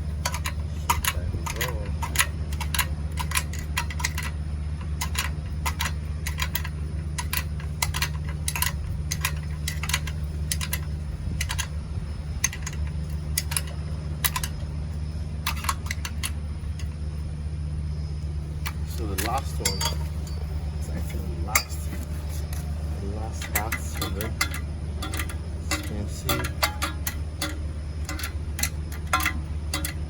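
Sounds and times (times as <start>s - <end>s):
low hum: 0.0s - 30.0s
ratchet wrench clicking: 0.2s - 14.6s, 15.4s - 16.9s, 23.3s - 30.0s.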